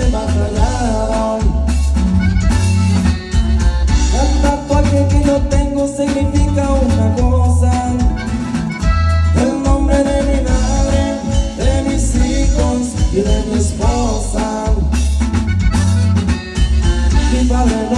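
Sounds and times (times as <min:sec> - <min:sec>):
person singing: 0:00.0 - 0:01.8, 0:09.2 - 0:15.2, 0:16.9 - 0:17.9
drums: 0:00.0 - 0:17.9
heavy bass: 0:00.0 - 0:17.9
latin band song: 0:00.0 - 0:17.9.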